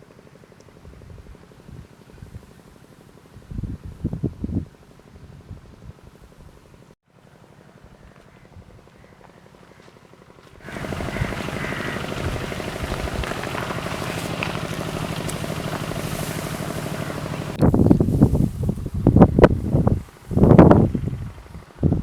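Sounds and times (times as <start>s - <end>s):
buzzing motor hum: 10.6s - 22.0s.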